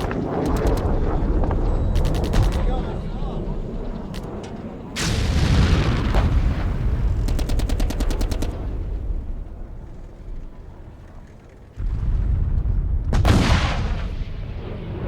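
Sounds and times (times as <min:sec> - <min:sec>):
gunshots: 0:00.0 - 0:01.3, 0:01.9 - 0:02.9, 0:05.0 - 0:09.0
automatic gunfire: 0:02.0 - 0:02.7, 0:07.2 - 0:08.7
heavy explosion with rumble: 0:05.0 - 0:07.3, 0:11.8 - 0:15.0.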